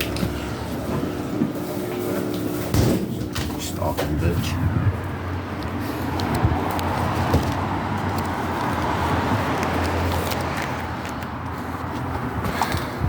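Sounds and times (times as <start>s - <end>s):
steady low hum: 0.0s - 9.5s.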